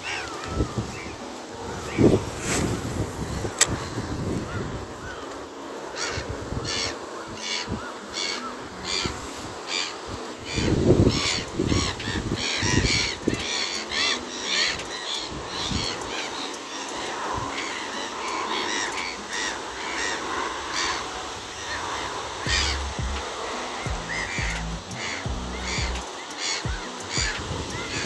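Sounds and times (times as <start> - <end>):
birds calling harshly: 0.0 - 28.0
heavy low thumps: 22.5 - 23.2, 23.9 - 26.0.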